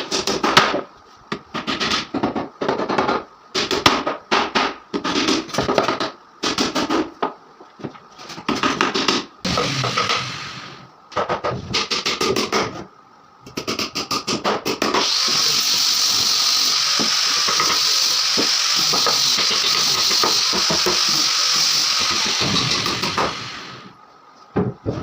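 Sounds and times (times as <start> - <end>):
power tool running: 9.5 - 10.8, 15.0 - 23.9.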